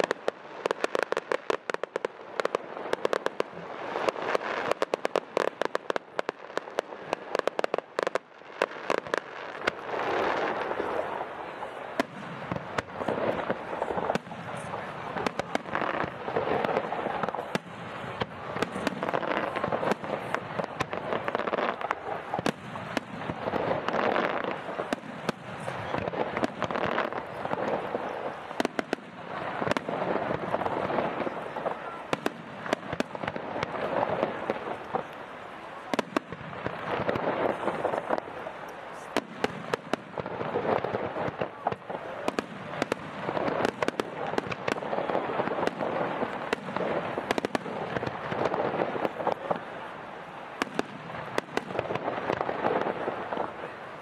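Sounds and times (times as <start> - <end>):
continuous wash of noise: 0.0 - 54.0
fireworks bangs and crackles: 0.0 - 54.0.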